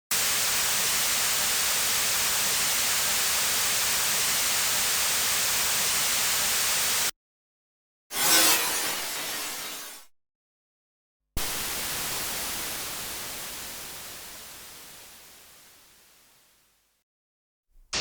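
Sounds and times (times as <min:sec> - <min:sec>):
white noise hiss: 0:11.4 - 0:16.9.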